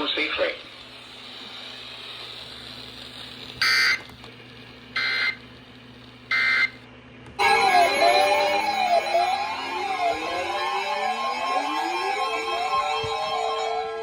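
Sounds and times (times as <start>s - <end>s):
digital data bursts: 7.4s - 14.0s
music with gliding tones: 7.4s - 14.0s.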